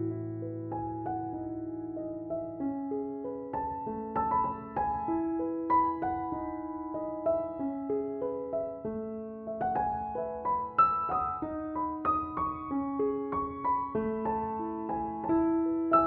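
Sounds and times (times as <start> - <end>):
gentle piano melody: 0.0 - 16.0.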